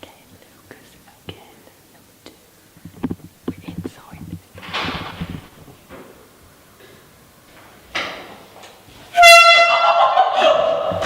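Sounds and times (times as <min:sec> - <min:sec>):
air horn blast: 0:09.1 - 0:09.8.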